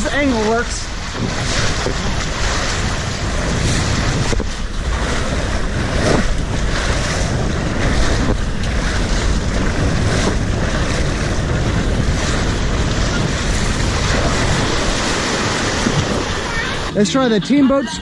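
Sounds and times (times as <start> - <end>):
rushing splashing water: 0.0 - 17.6
wind buffeting microphone: 0.0 - 18.0.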